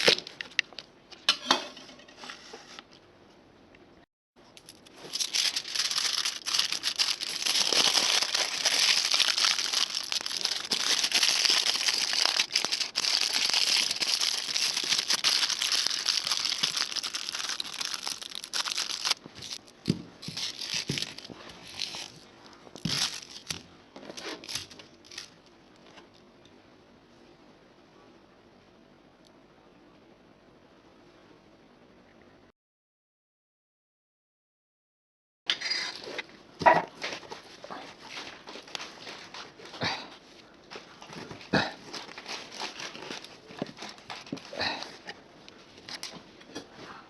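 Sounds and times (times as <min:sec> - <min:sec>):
crinkling and rustling: 0:04.6 - 0:26.2, 0:36.9 - 0:46.9.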